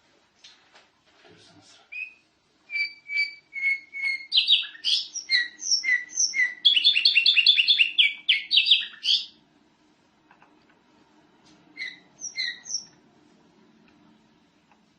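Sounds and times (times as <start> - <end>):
canary singing: 1.9 - 9.4, 11.8 - 13.0.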